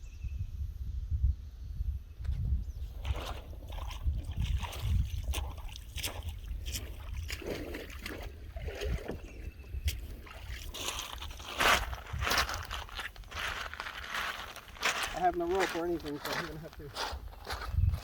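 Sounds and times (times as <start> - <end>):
water splashing against kayak: 2.9 - 15.2.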